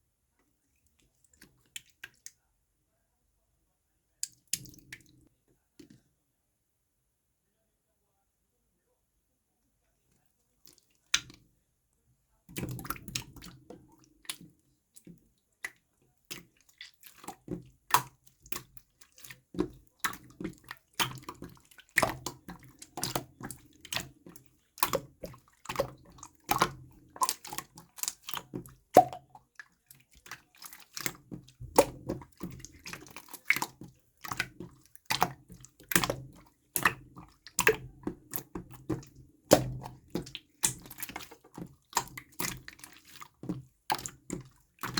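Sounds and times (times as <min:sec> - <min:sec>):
slime squished by hand: 0:30.2 - 0:44.9.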